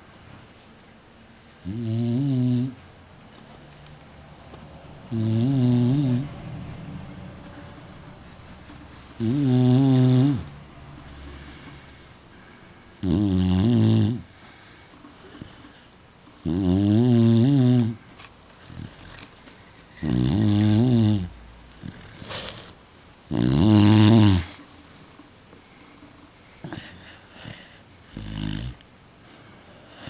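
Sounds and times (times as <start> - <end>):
dog snoring: 1.4 - 30.0
quiet dog breaths: 2.7 - 9.6, 29.0 - 30.0.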